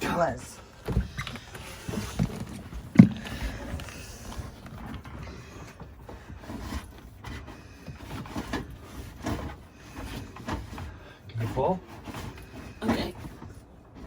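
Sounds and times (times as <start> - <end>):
heavy cable scraping and rustling: 0.0 - 14.0
soft knocks: 0.8 - 5.2.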